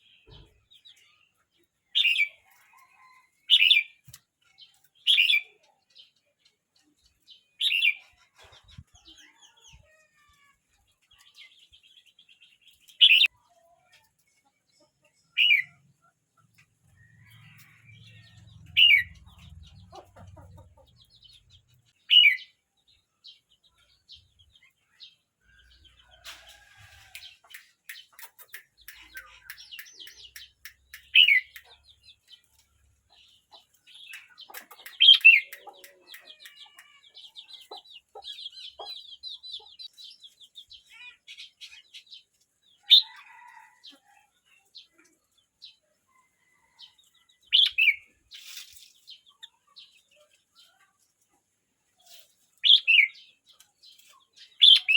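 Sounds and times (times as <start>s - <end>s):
bird singing: 16.6s - 26.2s, 27.3s - 42.0s, 54.4s - 54.9s.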